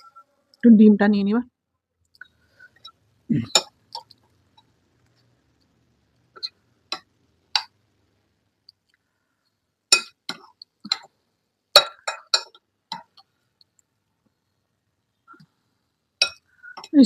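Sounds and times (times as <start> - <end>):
tableware clinking: 9.9 - 11.1, 11.8 - 13.1, 16.2 - 17.0.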